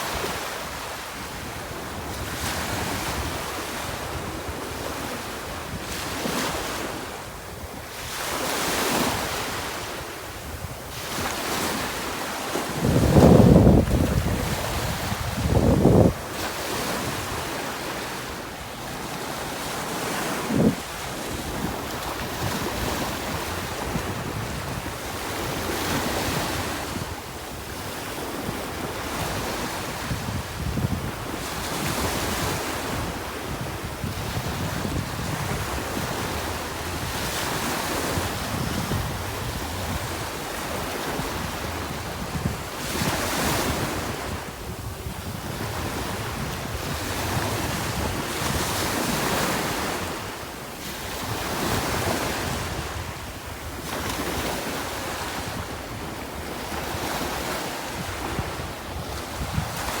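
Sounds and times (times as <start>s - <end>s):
small waves: 0.0s - 34.2s
wind buffeting microphone: 0.1s - 5.1s, 5.7s - 18.0s, 18.6s - 50.4s, 51.1s - 60.0s.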